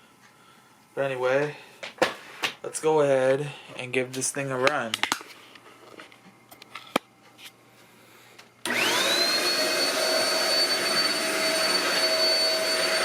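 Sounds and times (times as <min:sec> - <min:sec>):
vacuum motor whine: 0:08.6 - 0:13.0.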